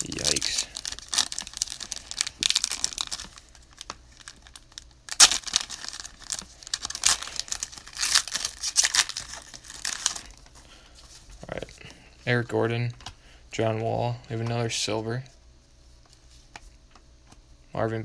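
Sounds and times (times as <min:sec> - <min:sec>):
foil wrapper tearing and crinkling: 0:00.0 - 0:10.4.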